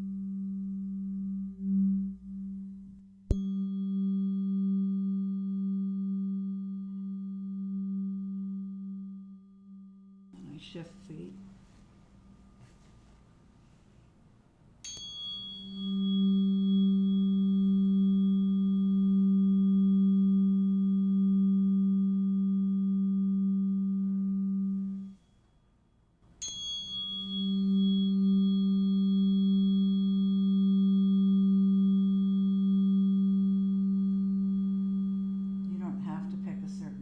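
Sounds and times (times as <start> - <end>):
tuning fork ringing: 0.0 - 12.8, 14.8 - 37.0.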